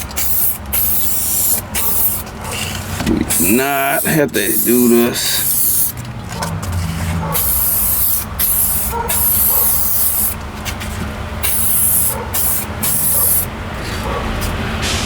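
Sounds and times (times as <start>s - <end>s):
spray can hissing: 0.0s - 6.0s, 7.3s - 10.4s, 11.4s - 13.5s.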